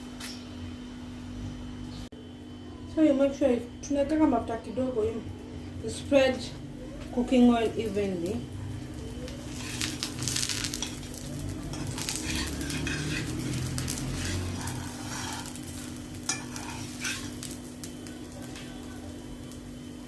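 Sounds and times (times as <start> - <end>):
pancake sizzling in oil: 7.2 - 20.0
utensil scraping and knocking pan: 11.7 - 17.4.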